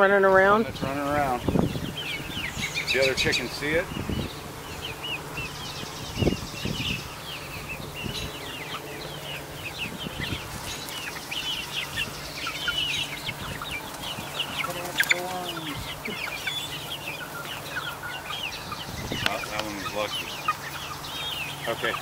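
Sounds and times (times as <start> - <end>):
chicks peeping and chirping: 0.0 - 22.0.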